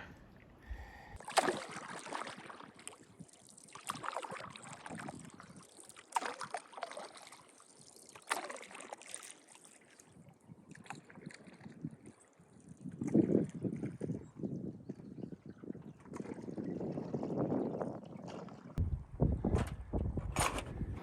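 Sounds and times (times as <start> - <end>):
canoe paddle splashing in water: 0.0 - 3.0, 3.7 - 7.6, 8.2 - 9.9.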